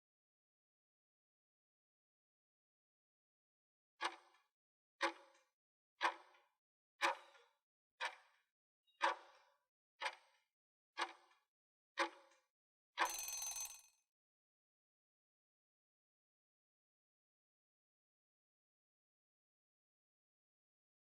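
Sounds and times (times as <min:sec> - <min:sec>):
timer ticking: 0:13.0 - 0:13.8
alarm ringing burst: 0:13.1 - 0:13.8.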